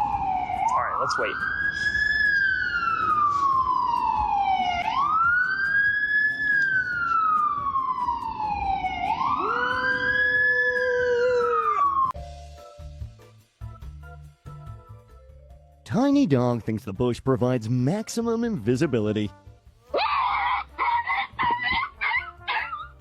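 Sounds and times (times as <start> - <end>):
lower held siren tone: 0.0 - 12.2
wailing siren: 0.0 - 12.2.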